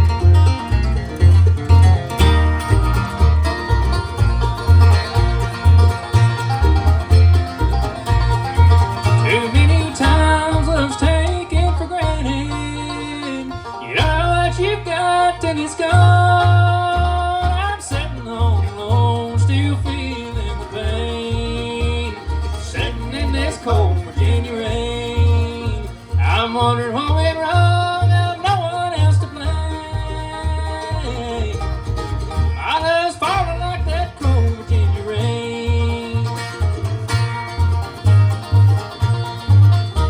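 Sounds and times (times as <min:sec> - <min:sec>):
instrumental bluegrass music: 0:00.0 - 0:40.0.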